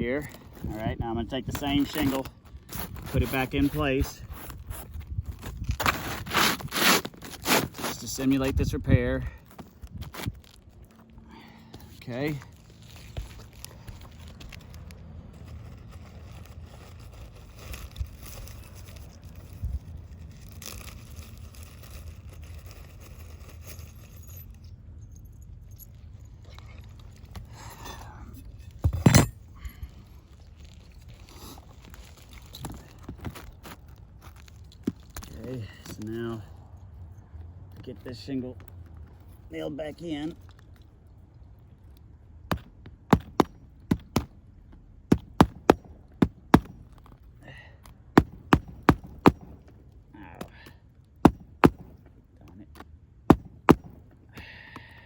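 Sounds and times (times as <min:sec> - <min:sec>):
light clicks and scrapes: 0:00.2 - 0:42.1
wind rumble on microphone: 0:02.8 - 0:06.8, 0:08.0 - 0:10.5, 0:17.9 - 0:20.6
hammer driving nails: 0:45.1 - 0:47.0, 0:48.2 - 0:49.6, 0:51.2 - 0:52.0.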